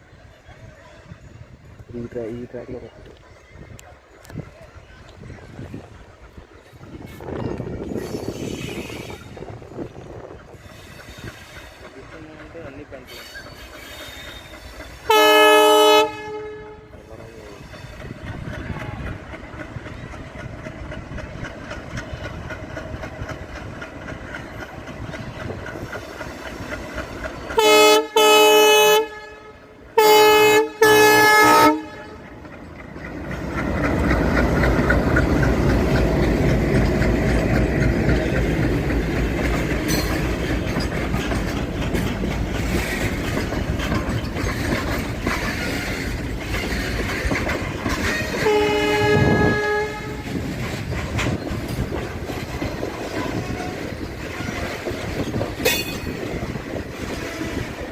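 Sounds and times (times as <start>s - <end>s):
train running close by: 0.0s - 57.9s
locomotive horn blasts: 15.1s - 17.0s, 27.6s - 32.3s, 48.2s - 50.4s.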